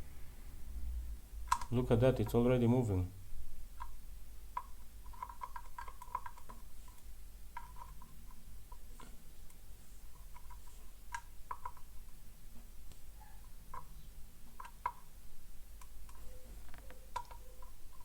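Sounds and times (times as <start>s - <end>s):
steady low hum: 0.0s - 5.2s.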